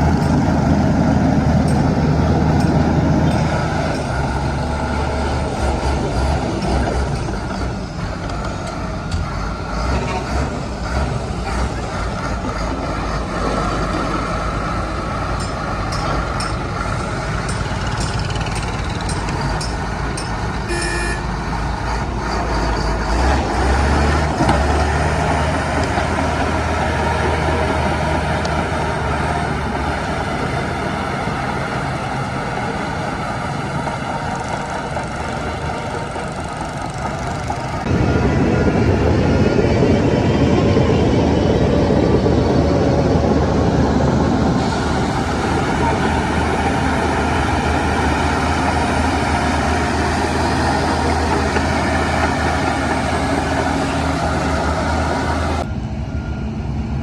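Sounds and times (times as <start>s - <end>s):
heavy diesel machinery running: 0.0s - 57.0s
short beep: 20.7s - 21.4s.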